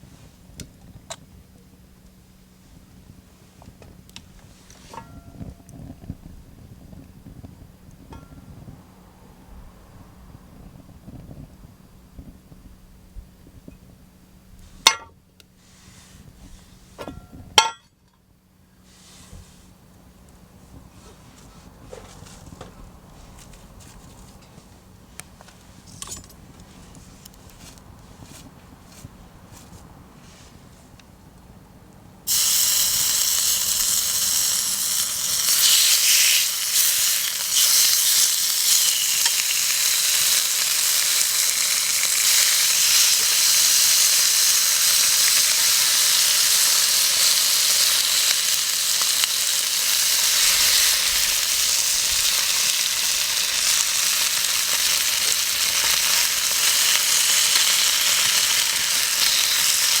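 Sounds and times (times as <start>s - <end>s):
meat sizzling loudly: 32.3s - 60.0s.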